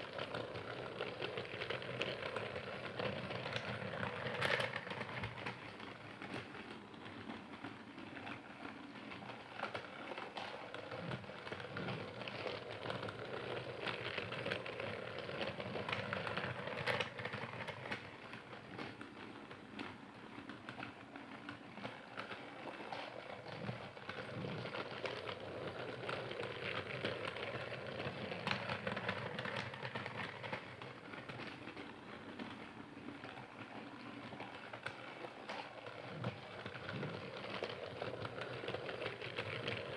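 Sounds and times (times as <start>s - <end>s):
toy train rattling: 0.0s - 39.9s.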